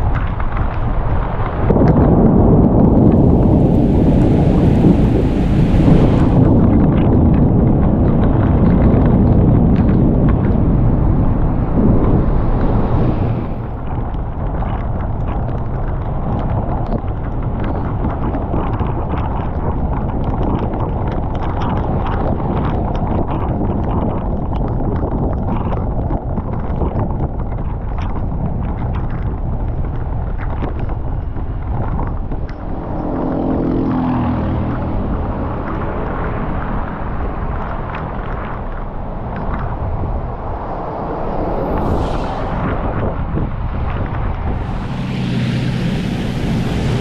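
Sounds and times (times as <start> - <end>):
thunder rumbling: 0.0 - 14.7, 31.0 - 47.0
steady rushing noise: 0.0 - 47.0.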